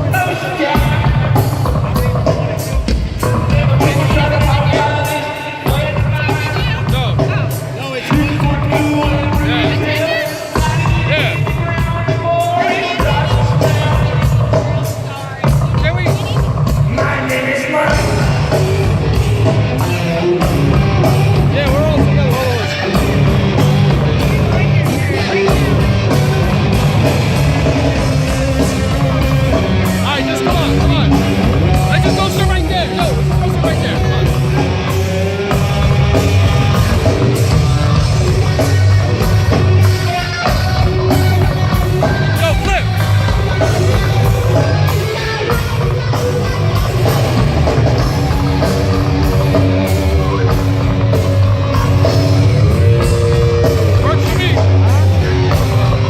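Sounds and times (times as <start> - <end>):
drums with cymbals: 0.0 - 56.0
heavy bass line: 0.0 - 56.0
rock band playing: 0.0 - 56.0
sliding guitar notes: 17.9 - 56.0.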